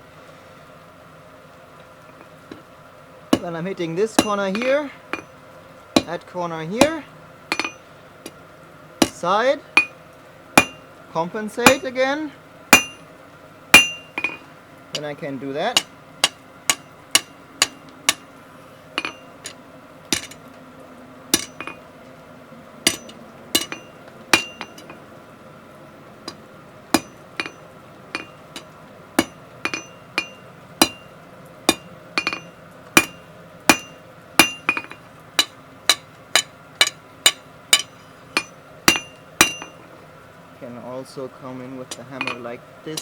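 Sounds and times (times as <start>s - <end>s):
hammer ringing on anvil: 4.2s - 5.3s, 10.6s - 10.8s, 12.8s - 13.0s, 13.8s - 14.4s, 21.4s - 21.8s, 22.9s - 24.8s, 27.0s - 27.6s, 29.2s - 31.1s, 31.7s - 39.8s, 42.2s - 42.5s.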